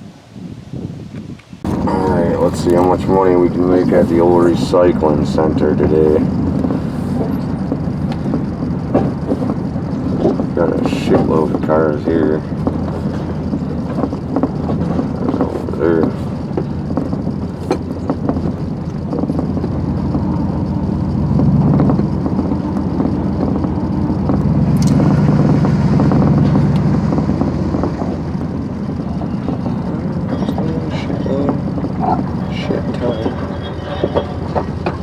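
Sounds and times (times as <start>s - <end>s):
truck engine driving slowly: 0.0s - 35.0s
scrap metal rattling and clicking: 1.6s - 35.0s.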